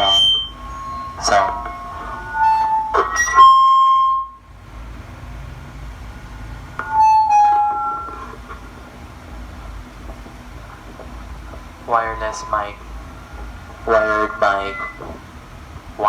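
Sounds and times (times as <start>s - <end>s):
microphone feedback squeal: 0.0s - 4.5s, 6.8s - 8.7s, 11.9s - 15.2s.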